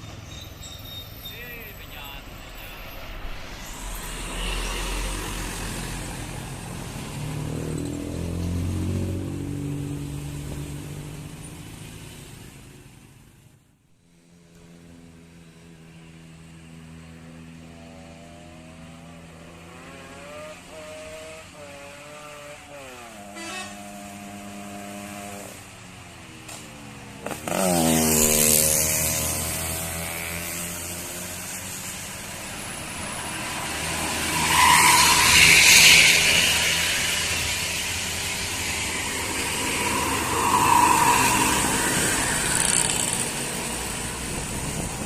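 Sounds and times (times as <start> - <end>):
bus engine passing: 0.0 - 13.1, 25.6 - 45.0
multi-tone air horn tune: 23.3 - 23.9.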